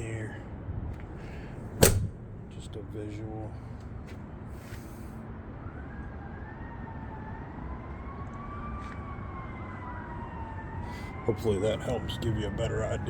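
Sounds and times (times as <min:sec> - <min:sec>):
low outdoor rumble: 0:00.0 - 0:05.0.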